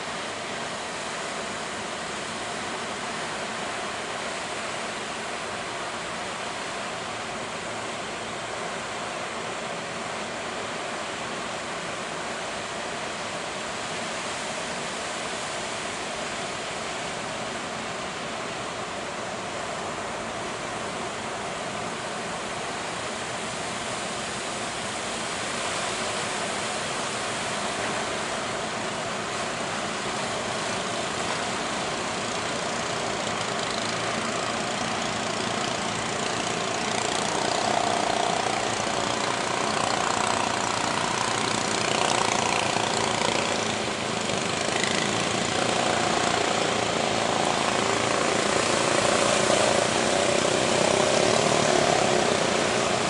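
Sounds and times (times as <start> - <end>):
surf rushing: 19.5 - 53.0
boat engine running: 27.3 - 53.0.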